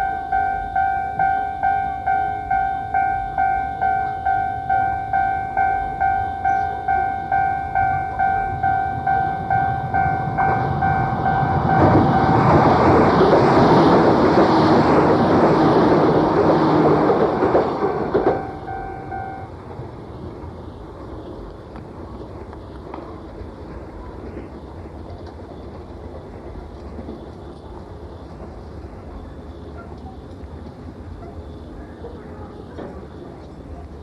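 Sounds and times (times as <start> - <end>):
level-crossing warning bell: 0.0 - 19.7
train rumbling past: 0.0 - 34.0.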